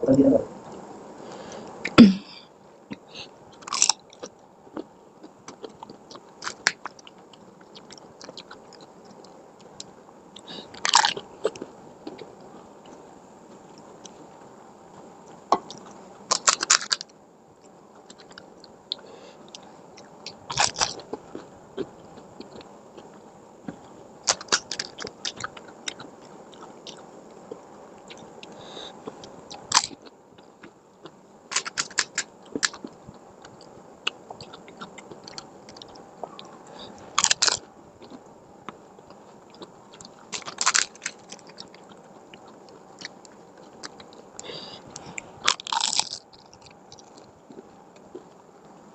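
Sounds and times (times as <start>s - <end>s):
chewing: 2.9s - 13.0s, 14.9s - 48.9s
crisp shells crunching: 3.6s - 4.2s, 10.5s - 11.2s, 16.3s - 17.0s, 20.3s - 21.0s, 24.3s - 26.0s, 31.5s - 32.9s, 37.1s - 37.6s, 40.2s - 41.9s, 45.4s - 47.2s.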